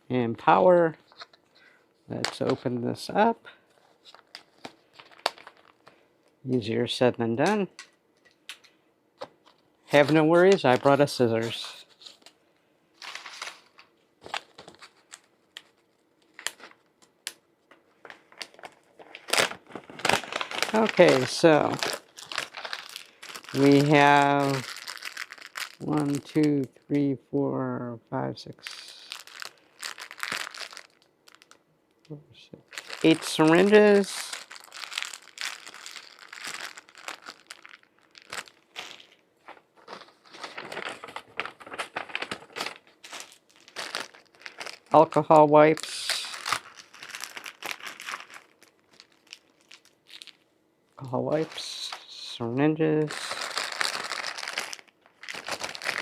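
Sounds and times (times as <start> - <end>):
packaging crinkling and rustling: 1.0 - 6.4, 7.5 - 12.4, 13.0 - 26.8, 28.6 - 31.6, 32.6 - 50.4, 51.0 - 56.0.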